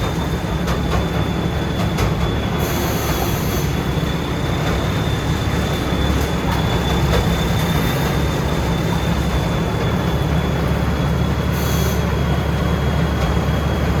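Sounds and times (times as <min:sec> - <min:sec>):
combine harvester running: 0:00.0 - 0:14.0.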